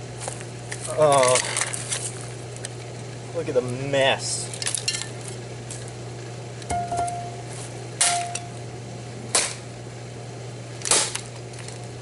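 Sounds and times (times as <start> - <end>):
metal bat striking plastic phone: 8.0 - 8.5.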